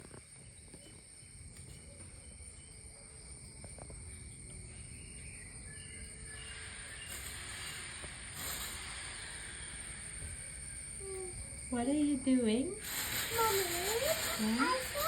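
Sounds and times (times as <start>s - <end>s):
high-pitched insect drone: 3.7s - 15.0s.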